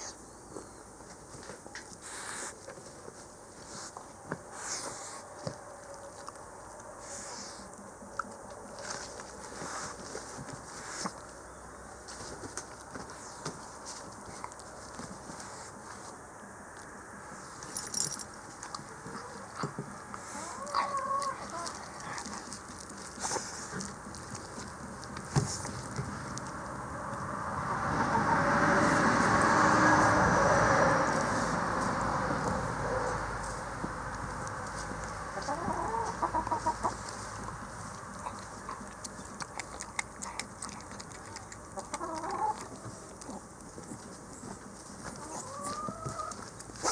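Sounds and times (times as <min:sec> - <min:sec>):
dog chewing meat: 0:18.7 - 0:26.5, 0:37.4 - 0:45.2
dog chewing wetly: 0:36.6 - 0:45.0.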